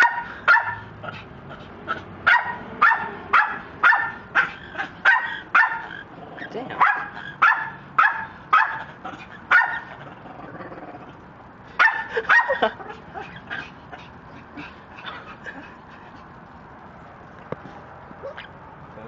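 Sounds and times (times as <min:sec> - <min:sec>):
dog barking: 0:00.0 - 0:00.9, 0:01.9 - 0:06.0, 0:06.7 - 0:10.0, 0:11.8 - 0:12.7.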